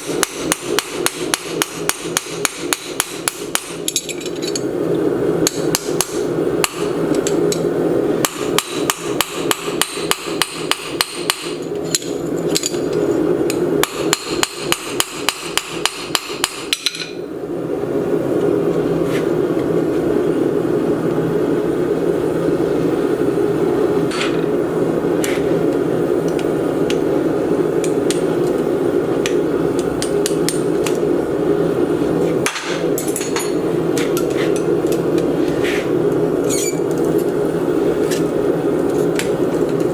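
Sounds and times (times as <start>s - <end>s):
hammer striking steel: 0.0s - 4.6s, 5.4s - 13.0s, 13.8s - 17.2s, 32.4s - 34.7s
loud steady running noise: 0.0s - 39.9s.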